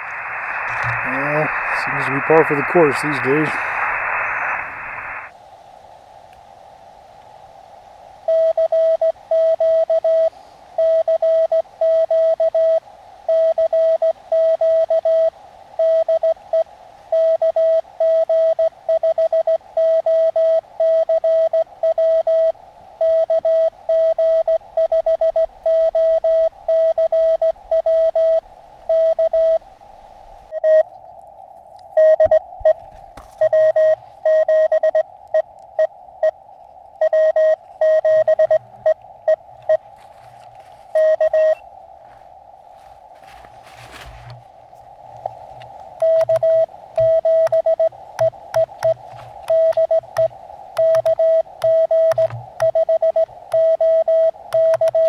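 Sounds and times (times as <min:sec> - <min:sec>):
receiver hiss: 0:00.0 - 0:55.0
morse code tone: 0:08.3 - 0:16.4, 0:17.2 - 0:29.6, 0:32.0 - 0:32.8, 0:33.4 - 0:35.0, 0:37.0 - 0:39.8, 0:40.9 - 0:41.6, 0:46.0 - 0:55.0.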